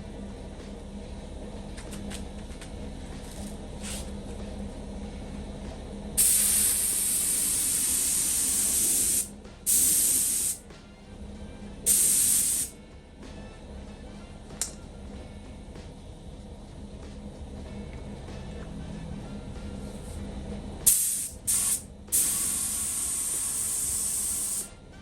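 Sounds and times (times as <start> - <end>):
hissing spray bursts: 6.2 - 10.6, 11.9 - 12.8, 20.9 - 24.7.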